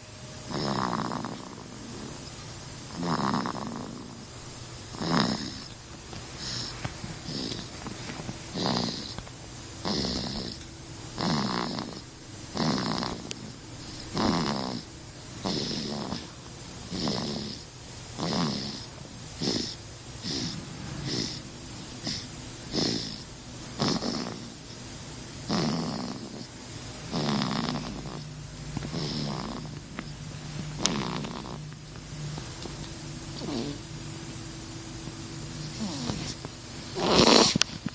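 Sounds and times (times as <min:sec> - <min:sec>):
baby snoring: 0:00.5 - 0:02.2, 0:02.8 - 0:04.3, 0:04.9 - 0:10.6, 0:11.2 - 0:21.4, 0:22.0 - 0:24.7, 0:25.4 - 0:30.1, 0:30.8 - 0:31.8, 0:33.3 - 0:33.9, 0:35.6 - 0:37.7.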